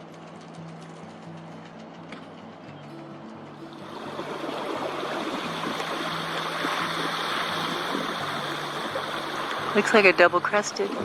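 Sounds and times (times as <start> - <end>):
low background music: 0.0 - 11.0
rushing splashing water: 3.6 - 11.0.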